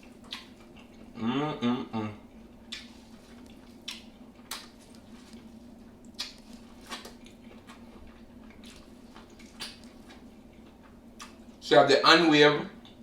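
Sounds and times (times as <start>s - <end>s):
wet chewing sounds: 0.0s - 1.2s, 2.5s - 11.6s
faint hum: 0.0s - 13.0s.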